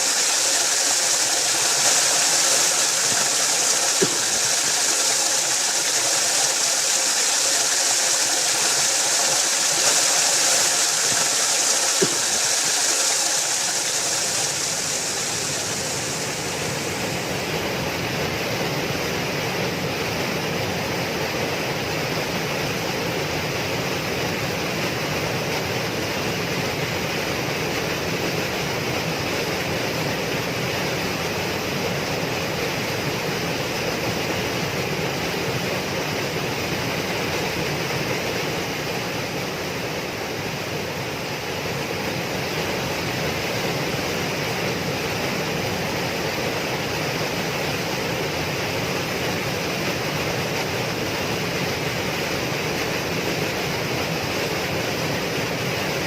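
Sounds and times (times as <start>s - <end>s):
waterfall rushing: 0.0s - 17.7s.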